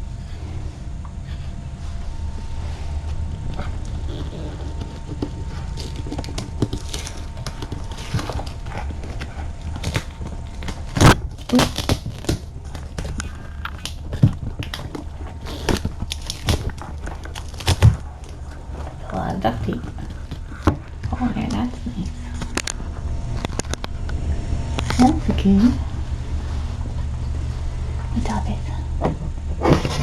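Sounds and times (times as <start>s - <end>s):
steady low hum: 0.0s - 30.0s.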